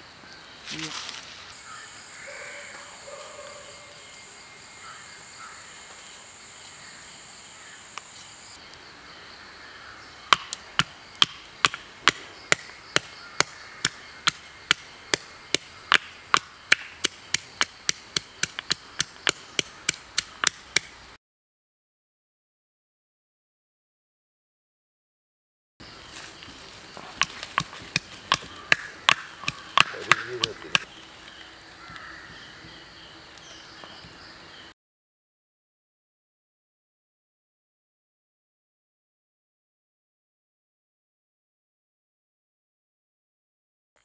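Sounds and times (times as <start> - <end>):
high-pitched insect whine: 0.0 - 20.4
blade chopping on cutting surface: 27.2 - 30.9.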